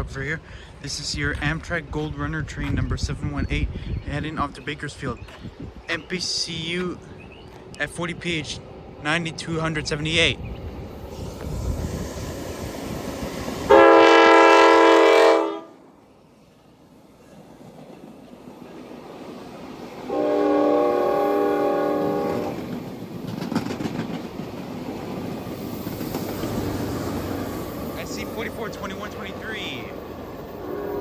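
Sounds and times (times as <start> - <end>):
low locomotive rumble: 0.0 - 31.0
train air horn blasts: 13.7 - 15.8, 20.1 - 22.7, 30.6 - 31.0.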